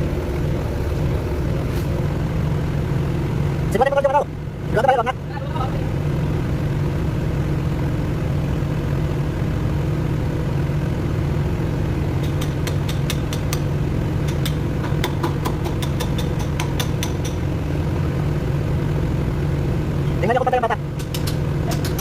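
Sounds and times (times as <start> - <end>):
diesel engine idling: 0.0 - 22.0
sharp clicks: 21.0 - 22.0.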